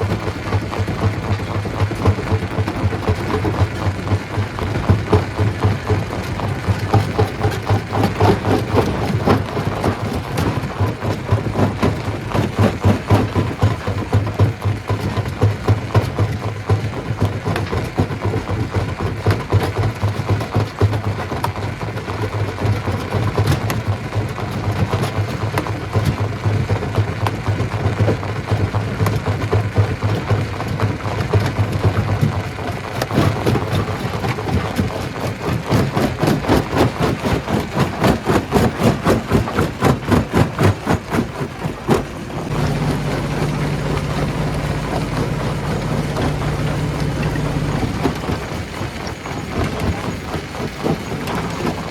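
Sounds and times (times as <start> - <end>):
fast regular pounding: 41.9 - 48.9
machine hum: 42.2 - 49.1.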